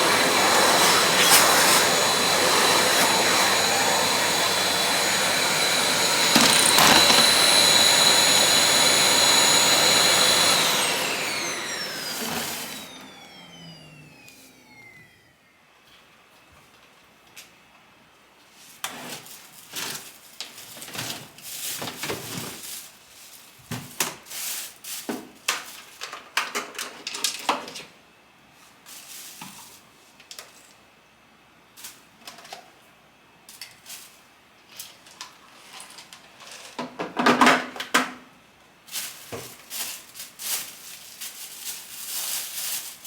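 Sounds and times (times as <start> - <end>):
clicking and clattering handling noises: 6.4 - 7.5.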